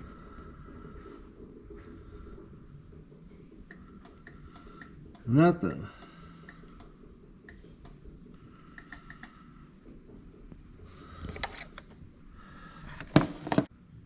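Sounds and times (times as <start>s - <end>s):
faint clicks: 6.0s - 9.9s.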